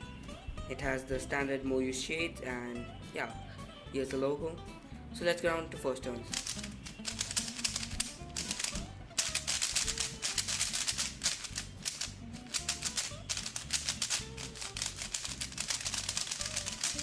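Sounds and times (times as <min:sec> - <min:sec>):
background music: 0:00.0 - 0:17.0
puzzle cube clicking and rattling: 0:06.3 - 0:17.0.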